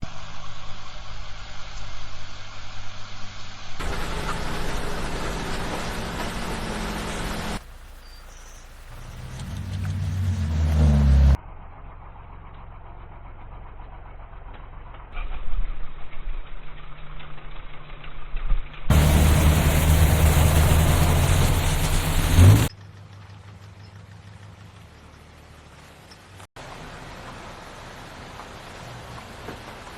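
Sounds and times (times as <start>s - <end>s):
vehicle engine: 3.8s - 17.3s, 18.9s - 26.4s.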